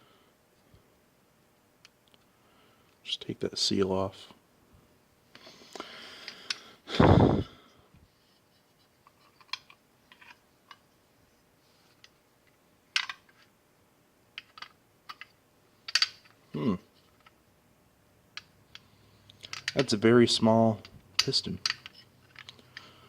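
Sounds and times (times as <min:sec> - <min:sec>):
metal parts clicking and tapping: 0:09.0 - 0:10.8, 0:13.0 - 0:13.4, 0:14.4 - 0:15.3, 0:15.9 - 0:16.4, 0:18.4 - 0:20.0, 0:20.8 - 0:22.9.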